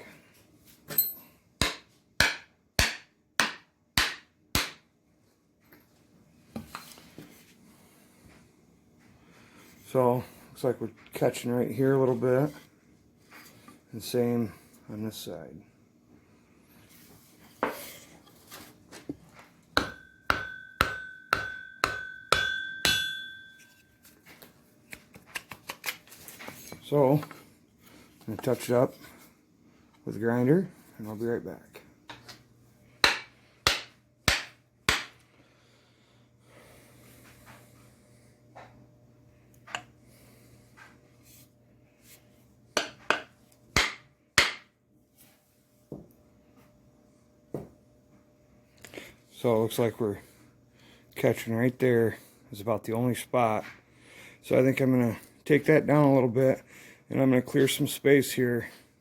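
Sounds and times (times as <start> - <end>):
hammer striking metal with ring: 1.0 - 4.8, 19.8 - 23.9, 33.0 - 35.2
axe head knocked on wooden handle: 19.8 - 23.4.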